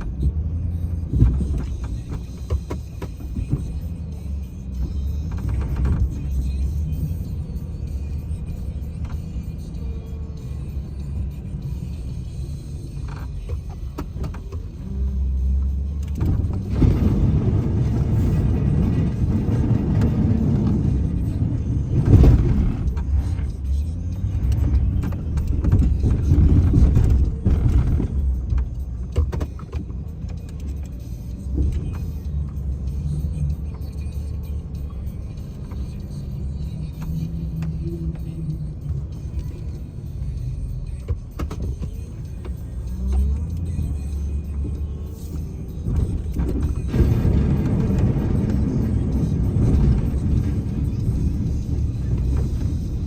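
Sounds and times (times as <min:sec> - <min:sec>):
snow plow engine running: 0:00.0 - 0:53.0.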